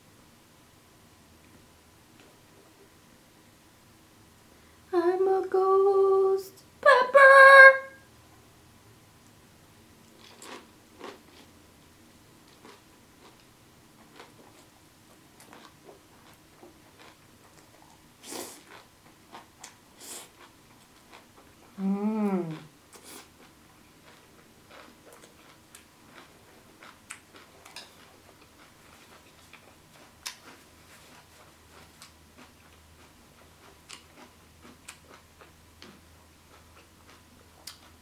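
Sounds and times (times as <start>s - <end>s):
short voiced sound: 6.8s - 8.0s
person chewing noodles: 10.1s - 11.6s, 12.4s - 38.0s.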